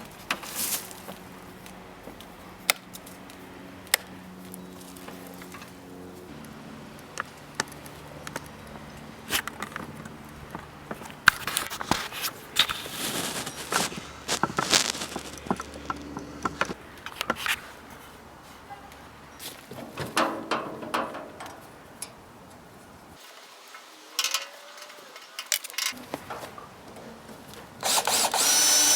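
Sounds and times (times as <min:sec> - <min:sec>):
scraping: 0:11.3 - 0:18.8
hard parts clicking and knocking: 0:15.2 - 0:17.6, 0:19.7 - 0:22.2.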